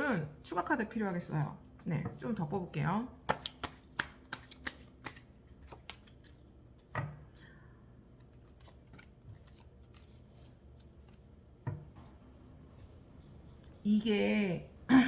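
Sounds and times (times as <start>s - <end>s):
cards clicking and snapping: 3.2s - 7.5s, 8.1s - 11.3s.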